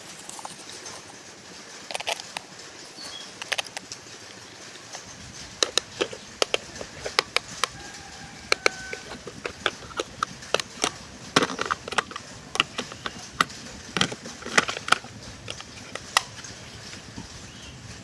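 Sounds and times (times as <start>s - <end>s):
steady background hiss: 0.0s - 18.0s
toy car clicks and knocks: 1.9s - 2.5s, 3.2s - 17.2s.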